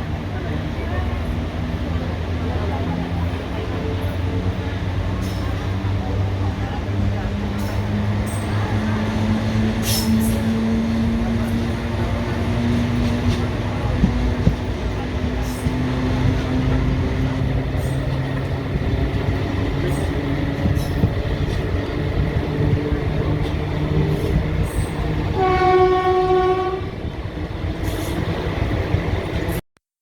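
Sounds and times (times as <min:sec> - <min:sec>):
train wheels rumbling on track: 0:00.0 - 0:29.6
rail-joint clicks: 0:07.4 - 0:29.6
locomotive horn blast: 0:25.3 - 0:27.0.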